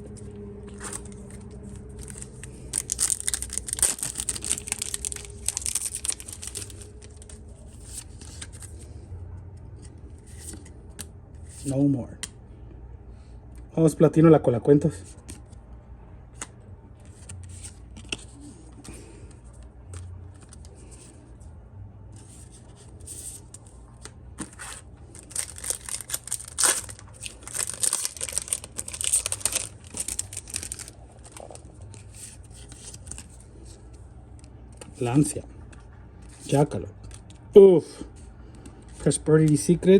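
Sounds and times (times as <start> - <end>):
cards being handled: 0.1 - 8.9, 16.3 - 21.2
foil pack crinkling and tearing: 0.8 - 8.6, 25.1 - 33.4.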